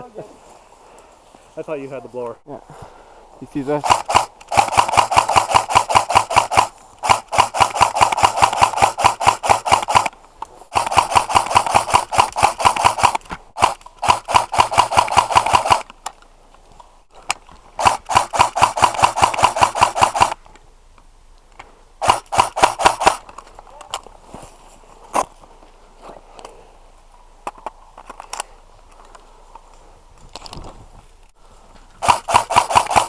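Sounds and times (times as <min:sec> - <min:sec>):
airsoft gun firing full-auto bursts: 0:03.8 - 0:15.9, 0:17.8 - 0:20.4, 0:22.0 - 0:23.2, 0:32.0 - 0:33.0.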